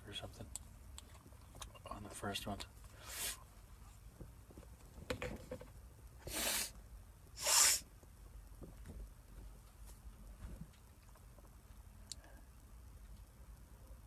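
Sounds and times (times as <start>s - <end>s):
person sniffing: 3.0s - 3.5s, 6.2s - 6.8s, 7.4s - 7.8s.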